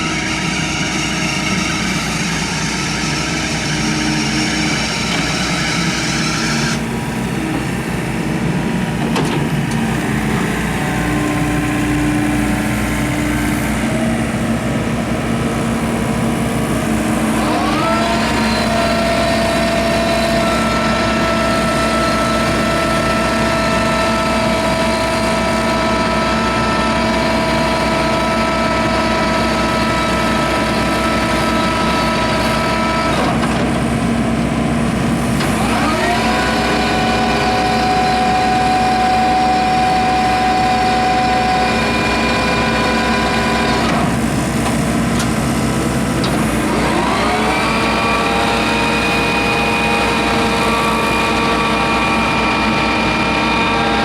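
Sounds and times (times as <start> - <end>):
excavator diesel engine running: 0.0 - 54.0
steady whine: 0.0 - 54.0.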